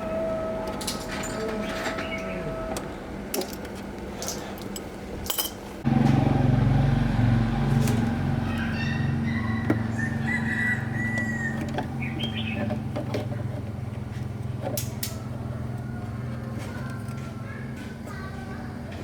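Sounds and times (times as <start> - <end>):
motor humming: 5.8 - 17.8.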